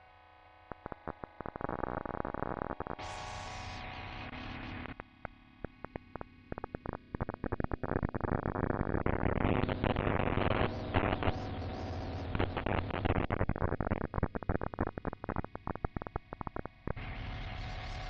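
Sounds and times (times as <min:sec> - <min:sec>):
glitchy electronic clicks: 0:00.6 - 0:03.1, 0:04.4 - 0:17.0
dense distorted noise wash: 0:05.6 - 0:18.0.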